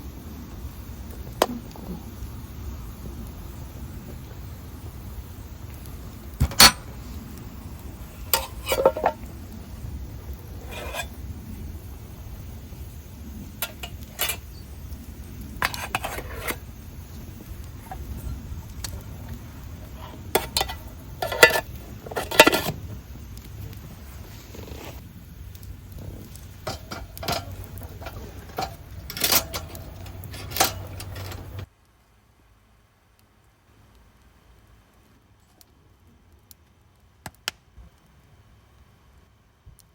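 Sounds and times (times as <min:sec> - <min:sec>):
dishes and cutlery clinking: 0:08.4 - 0:09.2, 0:10.7 - 0:11.1, 0:20.0 - 0:22.7, 0:26.7 - 0:31.6.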